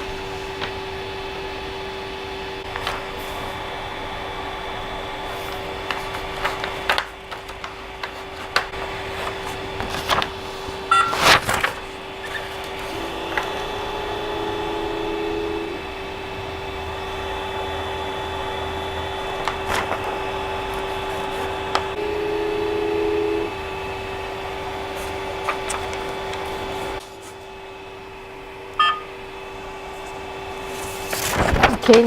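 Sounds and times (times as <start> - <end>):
short electronic beep: 10.9 - 11.2, 28.8 - 29.1.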